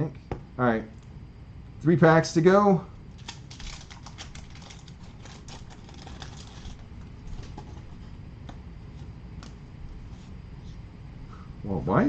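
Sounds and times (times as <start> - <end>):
wax paper pack tearing: 3.2 - 6.9
cards being handled: 3.2 - 8.0.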